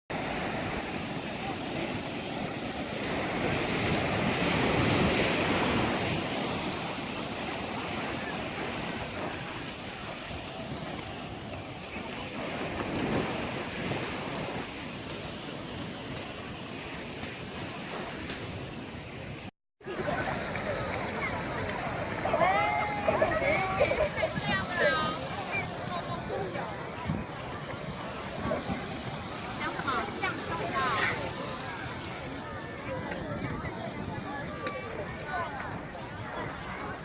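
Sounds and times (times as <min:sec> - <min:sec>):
sea waves washing onto beach: 0:00.1 - 0:37.0
wind rumbling on microphone: 0:20.1 - 0:37.0.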